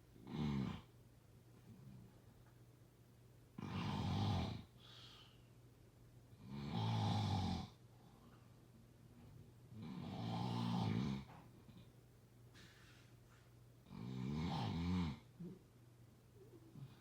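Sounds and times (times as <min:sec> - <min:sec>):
snoring: 0:00.2 - 0:00.9, 0:03.6 - 0:04.7, 0:06.4 - 0:07.8, 0:09.7 - 0:11.3, 0:13.8 - 0:15.3.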